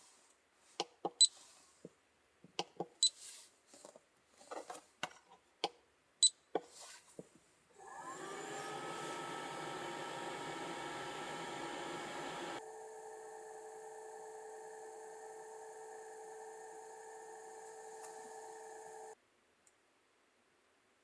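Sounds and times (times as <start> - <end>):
small motor humming and whining: 7.8 - 19.2.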